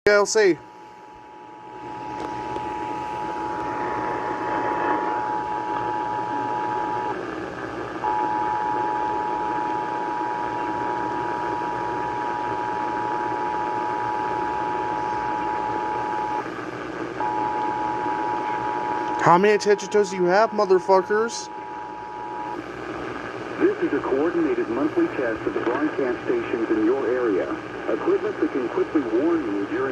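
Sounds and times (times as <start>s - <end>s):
radio static hiss: 0.1s - 29.9s
two-tone alarm signal: 8.0s - 16.4s, 17.2s - 22.6s.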